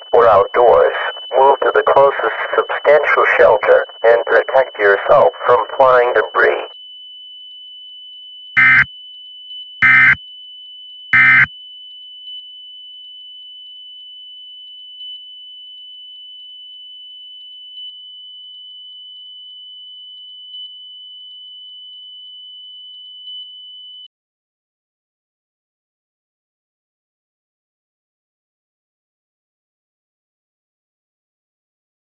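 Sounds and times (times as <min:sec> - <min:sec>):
faint blips: 0:08.6 - 0:08.9, 0:09.8 - 0:10.2, 0:11.2 - 0:11.5
rasping digital data bursts: 0:08.6 - 0:08.9, 0:09.8 - 0:10.2, 0:11.2 - 0:11.5
steady high-pitched tone: 0:08.6 - 0:08.9, 0:09.8 - 0:10.2, 0:11.2 - 0:11.5.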